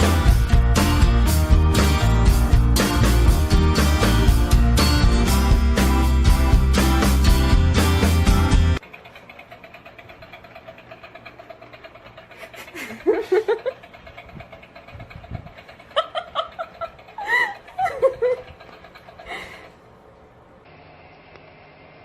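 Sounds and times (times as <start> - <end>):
person laughing: 12.3 - 13.8, 15.7 - 19.7.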